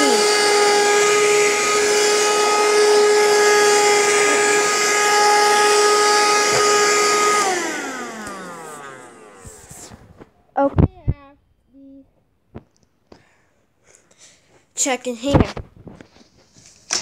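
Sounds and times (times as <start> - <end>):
vacuum cleaner motor running: 0.0 - 10.2.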